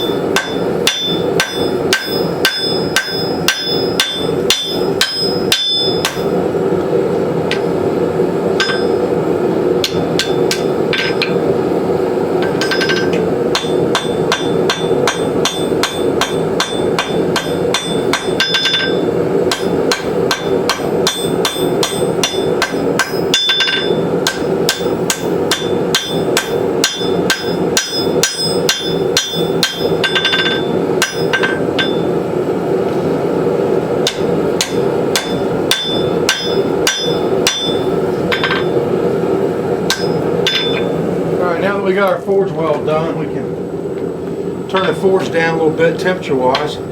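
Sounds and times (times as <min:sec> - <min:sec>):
hammer striking steel on anvil: 0:00.0 - 0:06.4, 0:07.4 - 0:07.8, 0:08.5 - 0:09.1, 0:09.8 - 0:11.5, 0:12.4 - 0:32.2, 0:34.0 - 0:38.9, 0:39.9 - 0:41.0, 0:44.7 - 0:45.2
forge running noise: 0:00.0 - 0:46.9.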